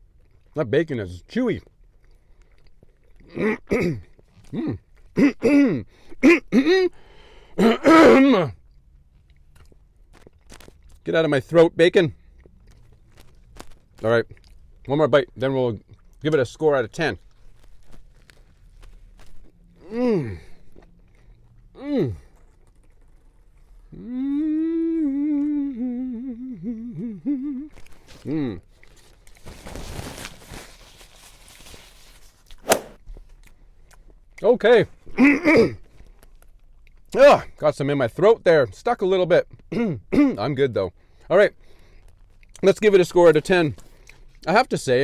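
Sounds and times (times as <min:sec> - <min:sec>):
man humming while chewing: 0:03.2 - 0:05.8, 0:19.7 - 0:20.9, 0:21.7 - 0:22.4, 0:23.8 - 0:28.7
man clearing throat and hacking: 0:03.3 - 0:07.0, 0:07.6 - 0:08.6, 0:35.1 - 0:35.8, 0:39.7 - 0:40.4.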